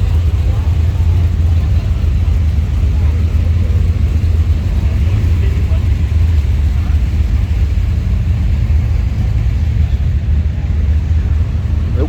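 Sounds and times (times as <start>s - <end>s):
car engines rumbling: 0.0s - 12.0s.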